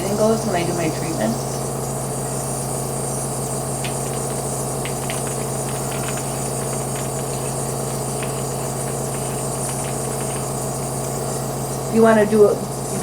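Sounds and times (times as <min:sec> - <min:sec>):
air compressor humming: 0:00.0 - 0:13.0
faint ticks: 0:03.8 - 0:11.1.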